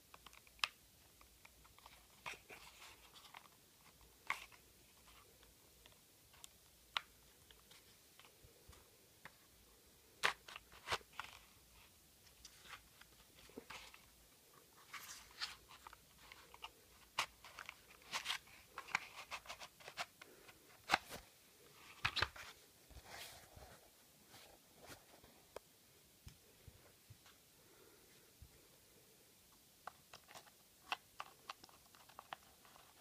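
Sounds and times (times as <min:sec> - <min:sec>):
paper crinkling: 0:30.1 - 0:33.0.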